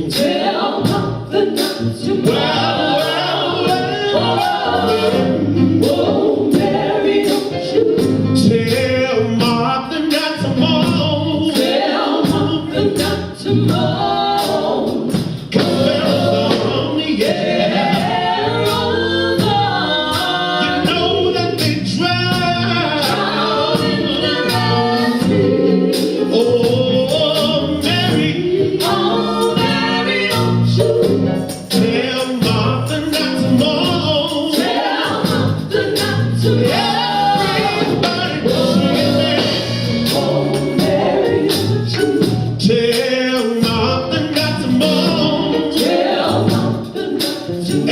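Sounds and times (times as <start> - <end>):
gospel choir singing: 0.0 - 47.9
instrumental accompaniment with beat: 0.0 - 47.9.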